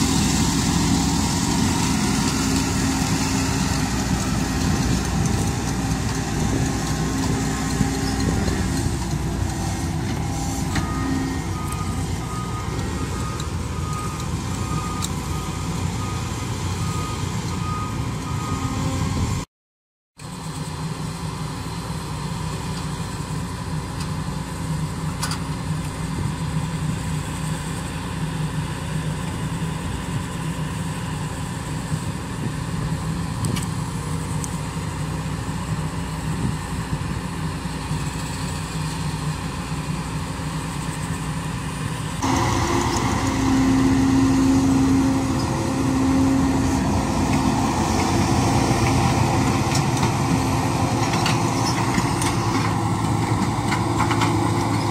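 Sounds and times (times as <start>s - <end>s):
diesel engine running: 0.0s - 19.4s, 20.2s - 54.9s
engine droning hum: 0.0s - 19.4s, 20.2s - 54.9s.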